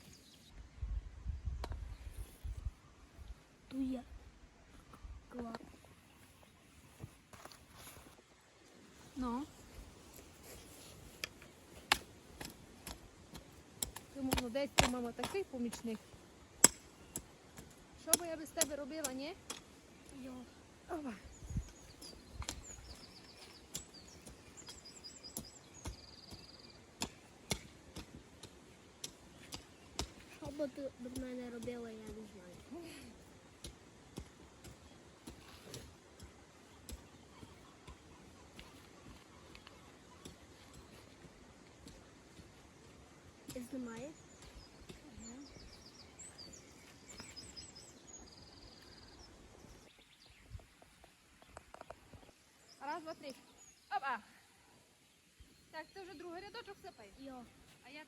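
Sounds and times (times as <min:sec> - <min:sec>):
songbirds chirping: 0:00.0 - 0:58.0.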